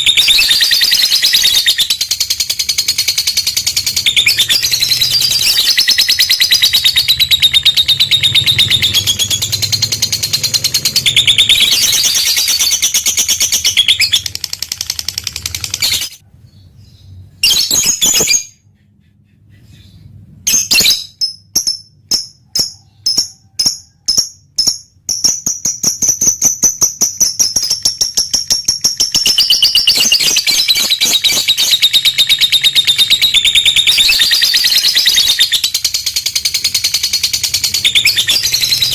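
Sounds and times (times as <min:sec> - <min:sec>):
lovebird chattering trill: 0:00.0 - 0:16.2.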